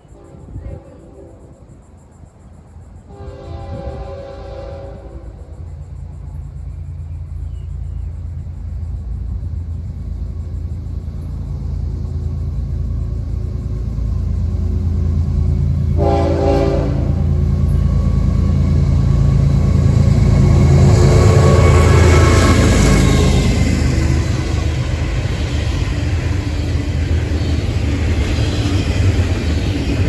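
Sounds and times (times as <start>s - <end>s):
diesel locomotive engine rumble: 0.0s - 30.0s
train horn blast: 0.1s - 1.7s, 3.1s - 5.7s, 15.5s - 19.7s.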